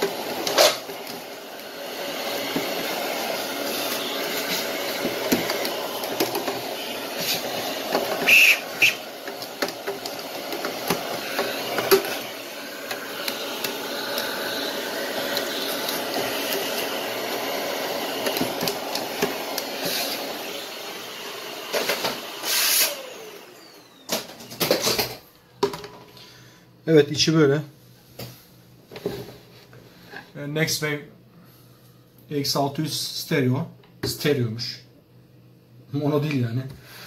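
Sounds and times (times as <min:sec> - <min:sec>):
brush scrubbing hiss: 0:02.0 - 0:09.4.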